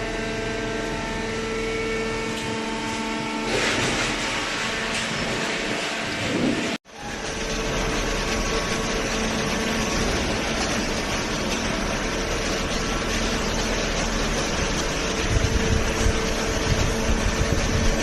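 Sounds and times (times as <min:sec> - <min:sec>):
hydraulic baler humming: 0:00.0 - 0:18.0.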